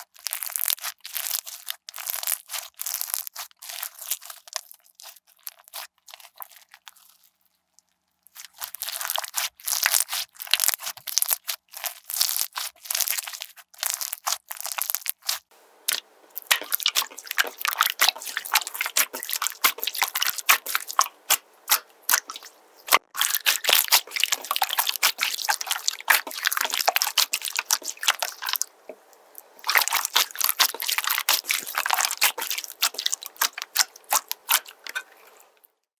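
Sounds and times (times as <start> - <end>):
slime squished by hand: 8.4 - 35.6.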